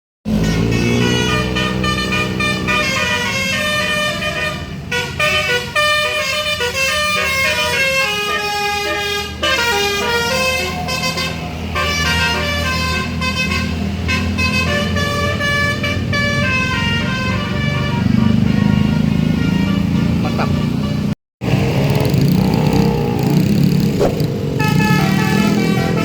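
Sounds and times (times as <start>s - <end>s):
musical air horn melody: 0.3s - 21.2s, 24.5s - 26.0s
bus engine humming: 21.4s - 26.0s.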